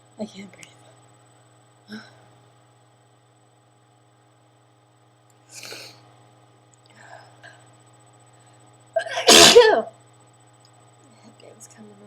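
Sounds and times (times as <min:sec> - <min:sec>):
person sneezing loudly: 0:09.0 - 0:09.9.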